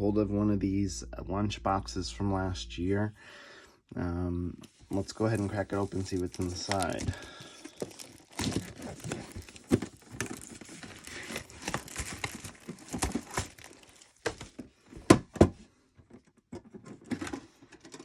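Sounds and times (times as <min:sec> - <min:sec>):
packaging rustling: 0:04.9 - 0:14.5.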